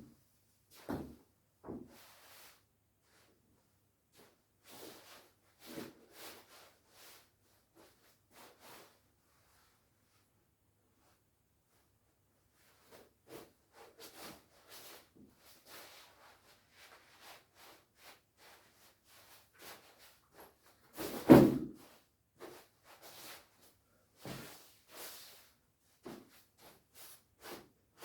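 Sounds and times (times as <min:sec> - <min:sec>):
thump: 0:21.0 - 0:21.7.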